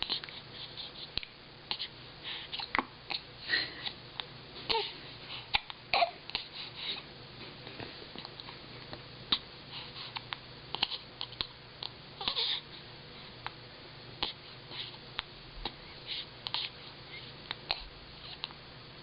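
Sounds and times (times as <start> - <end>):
child hiccuping: 5.6 - 6.2.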